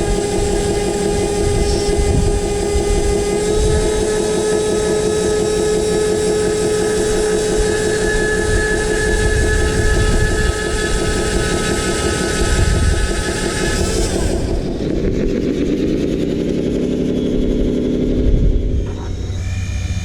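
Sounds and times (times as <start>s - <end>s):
toy excavator motors whining: 0.0s - 15.0s
higher motor tone: 0.0s - 20.0s.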